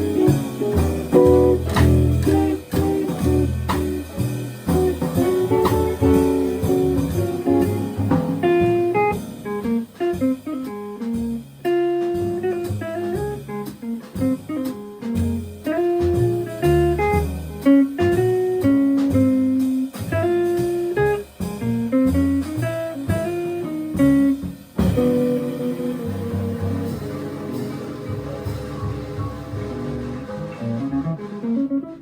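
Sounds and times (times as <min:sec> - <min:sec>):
drums: 0:00.0 - 0:32.0
jazz guitar: 0:00.0 - 0:32.0
piano: 0:00.0 - 0:32.0
upright bass: 0:00.0 - 0:32.0.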